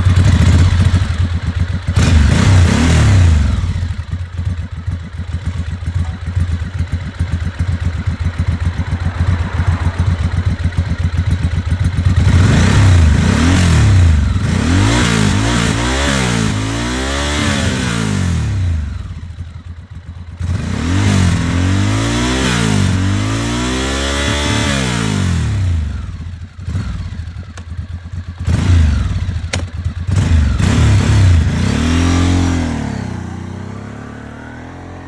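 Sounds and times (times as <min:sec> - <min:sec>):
motorcycle engine revving: 0:00.0 - 0:35.0
exhaust cracks: 0:06.0 - 0:14.4.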